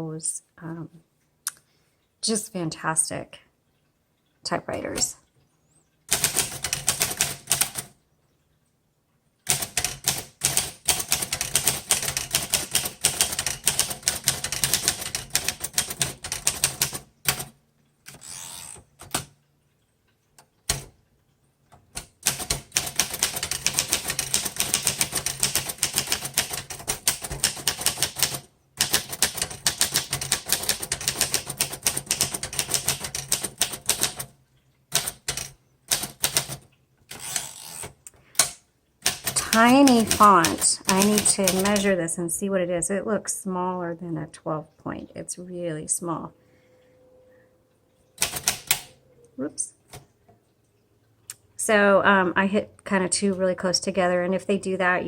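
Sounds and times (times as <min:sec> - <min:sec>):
manual typewriter typing: 0:06.1 - 0:08.0, 0:09.4 - 0:19.4, 0:20.4 - 0:21.0, 0:21.8 - 0:42.0, 0:48.2 - 0:49.0.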